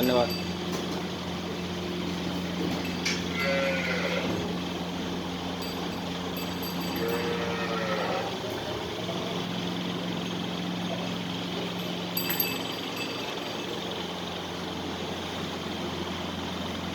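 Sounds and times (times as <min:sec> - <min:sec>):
low machine hum: 0:00.0 - 0:16.9.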